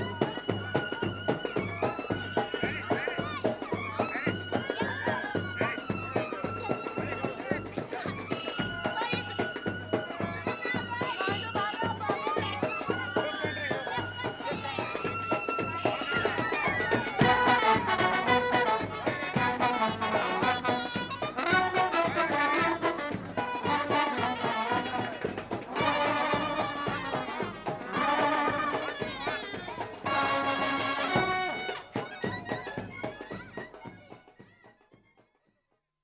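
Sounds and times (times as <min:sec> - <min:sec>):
reedy wind instrument melody: 0:00.0 - 0:32.9
percussion: 0:00.0 - 0:35.6.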